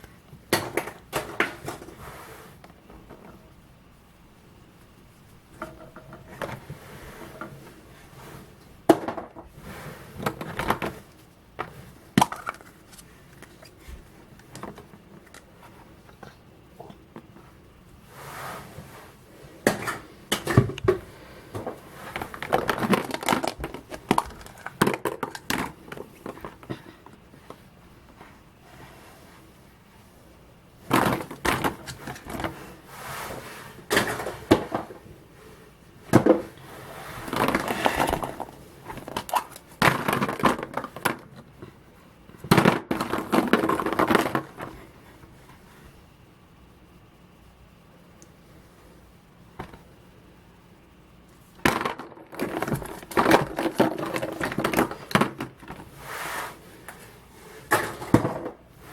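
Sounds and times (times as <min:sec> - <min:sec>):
chocolate eggs cracking: 0:22.2 - 0:26.2.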